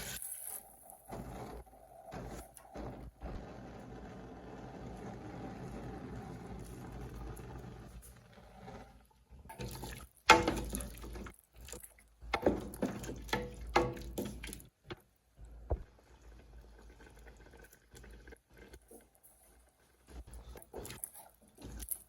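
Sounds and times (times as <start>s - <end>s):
liquid sloshing: 9.5s - 14.7s.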